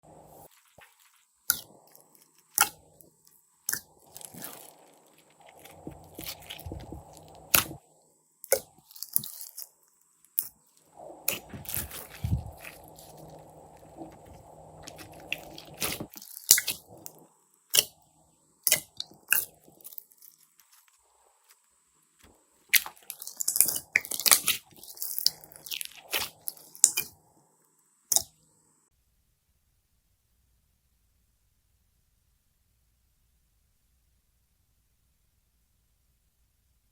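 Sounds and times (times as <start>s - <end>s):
slime squishing and crackling: 0.4s - 7.8s, 8.5s - 9.6s, 10.4s - 17.9s, 18.6s - 21.0s, 22.7s - 27.1s
sharp clicks and pops: 5.5s - 7.8s, 18.7s - 20.9s, 28.1s - 28.4s.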